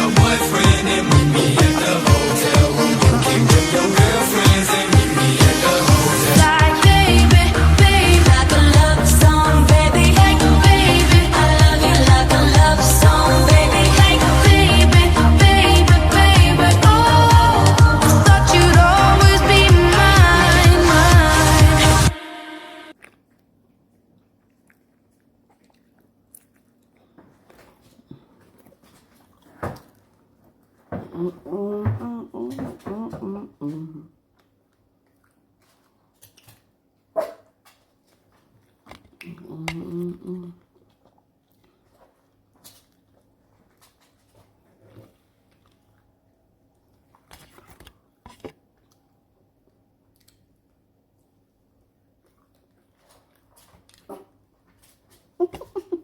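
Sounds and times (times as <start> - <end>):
person chewing crisp food: 22.9 - 30.8, 34.3 - 36.8, 37.7 - 44.2
faint crunching and clicking: 23.0 - 30.9.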